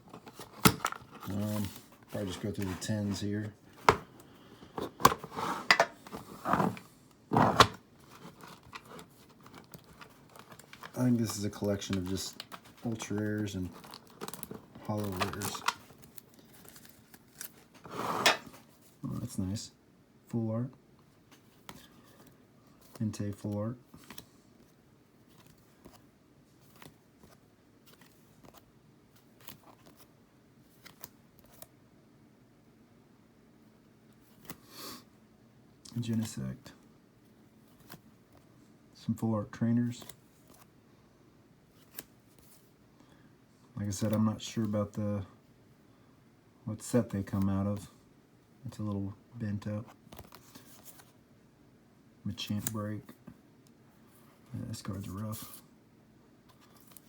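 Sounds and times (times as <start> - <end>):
trading cards flipped by hand: 26.6 - 30.1, 41.8 - 42.5.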